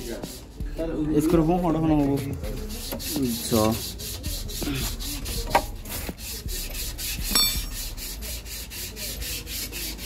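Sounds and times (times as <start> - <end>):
fast rubbing or scraping: 1.2 - 10.0
metallic clink: 7.3 - 7.8.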